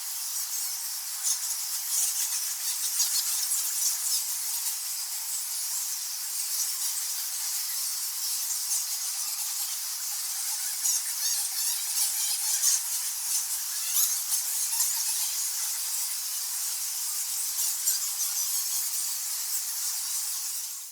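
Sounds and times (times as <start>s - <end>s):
bats squeaking: 6.7s - 19.2s.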